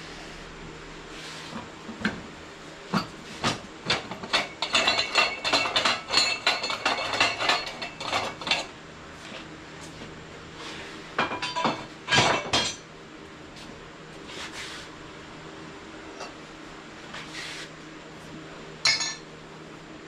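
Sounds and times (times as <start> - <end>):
steady low hum: 0.0 - 20.0
metal clinking and clanking: 3.9 - 8.7, 11.2 - 12.8, 18.8 - 19.3.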